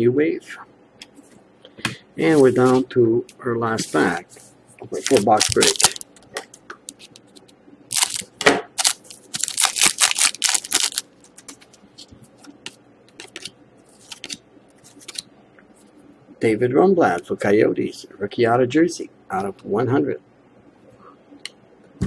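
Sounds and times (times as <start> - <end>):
foil card pack crinkling: 4.9 - 6.1, 7.9 - 11.6
cards clicking and sliding: 13.1 - 15.2.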